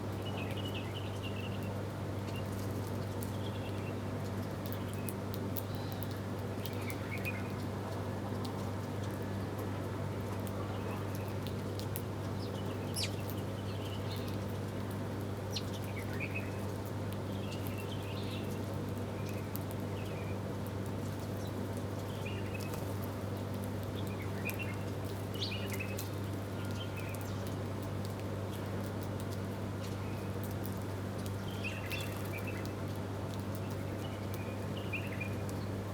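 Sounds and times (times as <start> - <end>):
small birds chirping: 12.3 - 14.5, 31.4 - 32.8.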